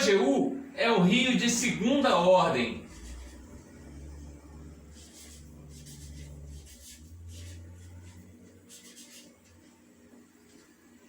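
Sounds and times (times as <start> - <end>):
low steady hum: 0.0 - 11.0
pencil scratching on paper: 1.4 - 3.7, 4.8 - 10.8.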